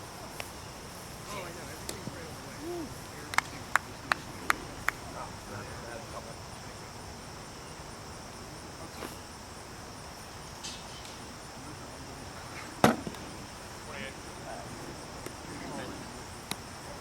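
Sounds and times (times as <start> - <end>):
insects chirring: 0.0 - 17.0
sharp knock: 12.8 - 13.2.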